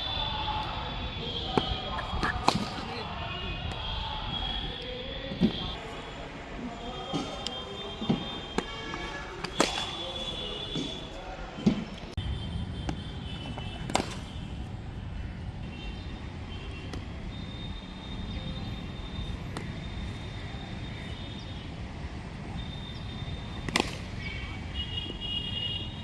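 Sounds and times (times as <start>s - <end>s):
cricket bat striking ball: 1.4s - 3.1s, 7.1s - 11.0s, 12.8s - 14.6s, 23.5s - 24.3s.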